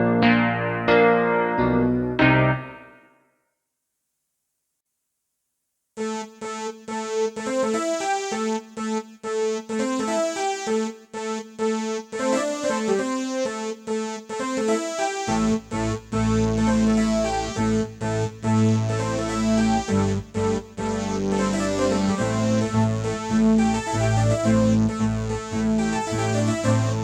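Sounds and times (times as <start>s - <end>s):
deep bass notes: 0.0s - 2.8s, 15.3s - 27.0s
keyboard piano melody: 0.0s - 3.1s.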